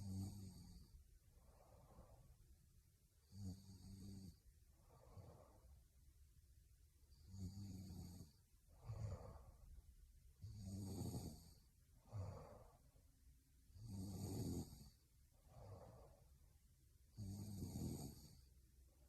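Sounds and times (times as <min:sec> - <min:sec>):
woman snoring: 0:00.0 - 0:01.0, 0:03.2 - 0:04.4, 0:07.1 - 0:09.6, 0:10.4 - 0:12.8, 0:13.8 - 0:16.2, 0:17.1 - 0:18.5
soft breath out: 0:00.9 - 0:02.6, 0:04.7 - 0:05.9, 0:08.7 - 0:09.8, 0:12.0 - 0:13.1, 0:15.4 - 0:16.6.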